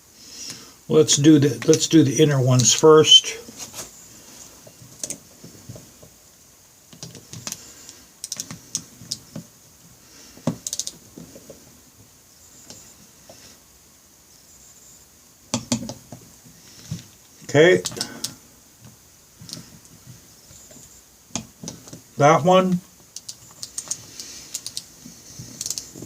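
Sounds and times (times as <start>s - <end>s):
hand tools clicking and tapping: 10.4s - 11.0s, 15.5s - 16.1s, 23.2s - 26.0s.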